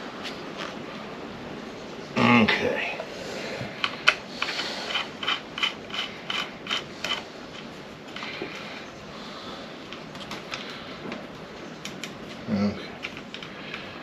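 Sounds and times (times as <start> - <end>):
ratchet wrench clicking: 4.9 - 7.2.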